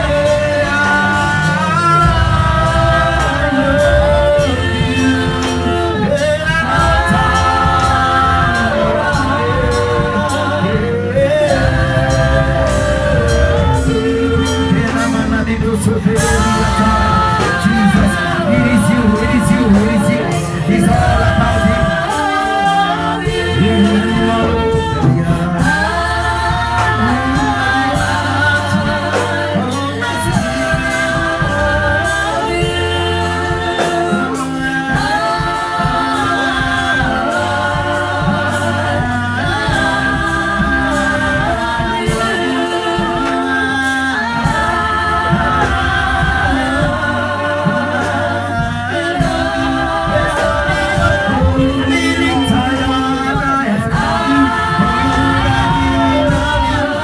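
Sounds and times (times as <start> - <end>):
gospel voices singing with beat: 0.0 - 57.0.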